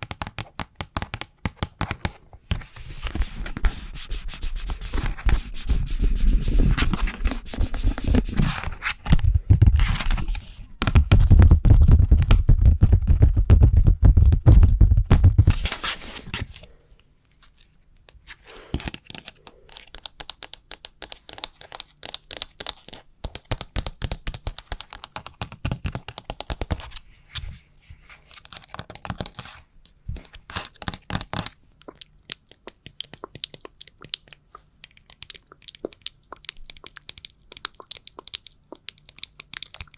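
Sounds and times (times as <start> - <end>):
rubbing on plastic fan: 2.5 - 10.7.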